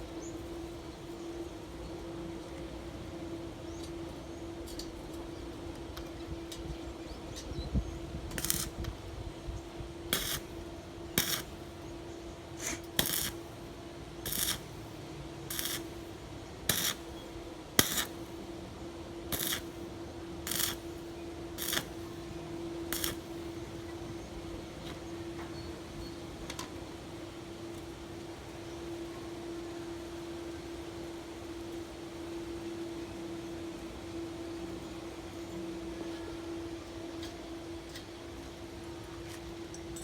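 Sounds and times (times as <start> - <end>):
steady hum: 7.8 - 24.6
welding hissing and crackling: 8.3 - 9.0, 10.1 - 18.6, 19.2 - 23.9.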